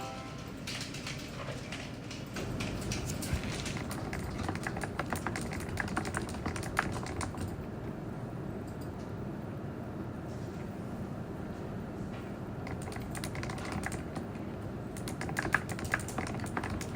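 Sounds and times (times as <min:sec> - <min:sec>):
typing on mechanical keyboard: 0:00.0 - 0:07.6, 0:12.6 - 0:14.3, 0:15.0 - 0:16.9.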